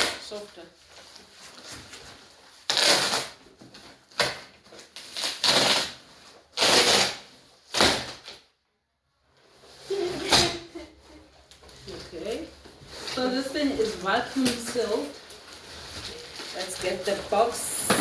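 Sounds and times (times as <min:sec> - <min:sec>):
plastic wrapping crinkling: 0:09.8 - 0:18.0.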